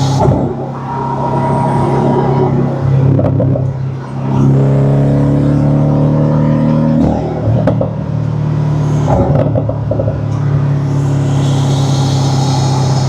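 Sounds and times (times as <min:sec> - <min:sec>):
high turbo whistle: 0:00.0 - 0:04.7, 0:10.7 - 0:13.0
car engine drone: 0:00.0 - 0:13.0.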